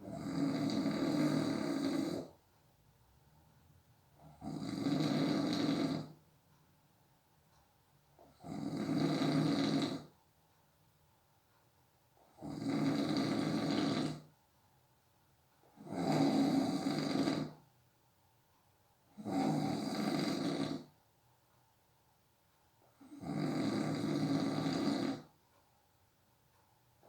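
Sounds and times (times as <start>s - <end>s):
person snoring: 0.0s - 2.4s, 4.2s - 6.2s, 8.3s - 10.1s, 12.3s - 14.3s, 15.8s - 17.6s, 19.2s - 20.9s, 23.0s - 25.3s.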